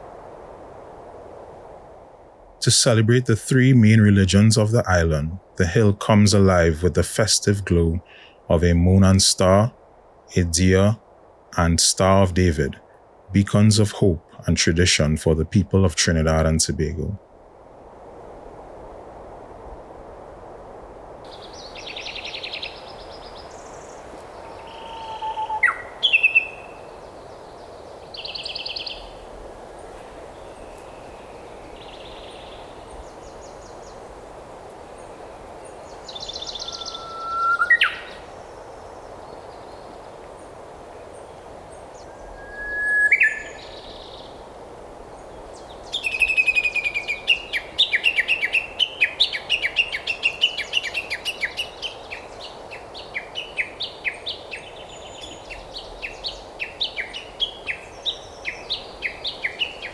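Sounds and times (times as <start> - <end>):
background hiss: 0.0 - 59.9
whistled bird notes swooping upward: 36.2 - 38.2, 42.0 - 44.2.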